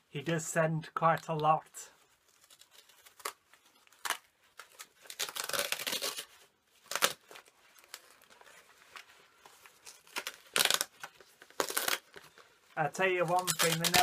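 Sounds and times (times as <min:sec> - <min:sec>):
packaging tearing and crinkling: 0:02.3 - 0:12.5, 0:13.2 - 0:14.0.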